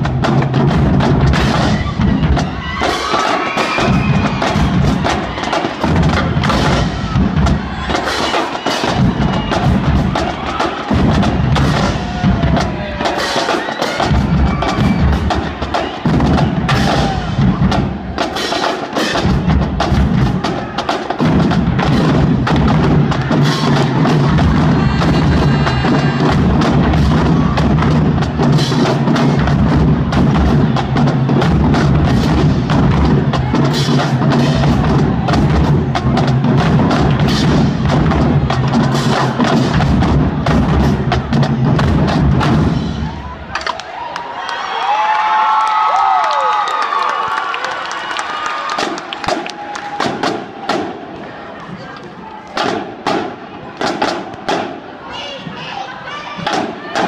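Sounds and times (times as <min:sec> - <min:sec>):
bass drums: 0:00.0 - 0:43.7
snare drums: 0:00.0 - 0:44.3, 0:48.3 - 0:51.3, 0:52.5 - 0:55.7, 0:56.4 - 0:57.0.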